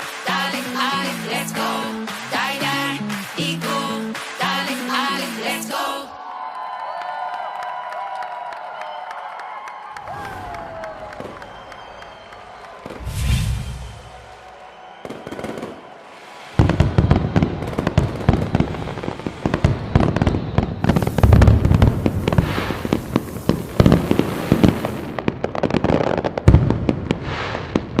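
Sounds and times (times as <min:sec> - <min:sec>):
fireworks cracking and banging: 0:00.0 - 0:05.8, 0:10.1 - 0:28.0
music: 0:00.0 - 0:06.1.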